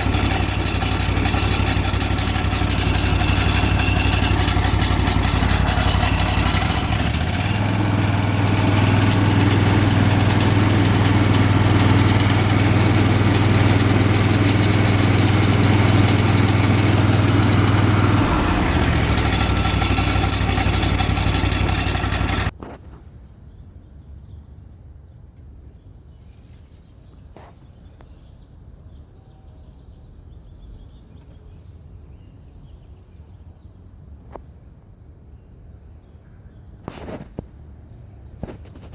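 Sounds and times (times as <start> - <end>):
loud clutch noise: 0.0 - 22.6
mower engine running: 0.0 - 22.6.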